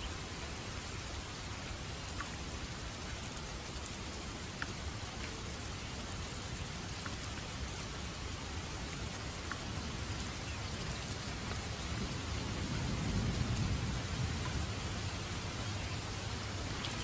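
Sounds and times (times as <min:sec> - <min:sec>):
steady rain falling: 0:00.0 - 0:17.0
low thunder rolling: 0:11.9 - 0:15.6.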